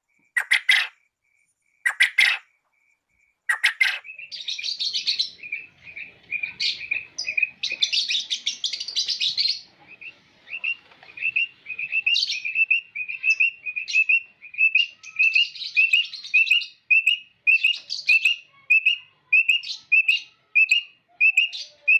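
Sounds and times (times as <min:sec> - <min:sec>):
quail calling: 0:00.0 - 0:01.0, 0:01.8 - 0:02.5, 0:03.5 - 0:21.9
rapid chattering trills: 0:00.0 - 0:01.1, 0:03.2 - 0:15.6.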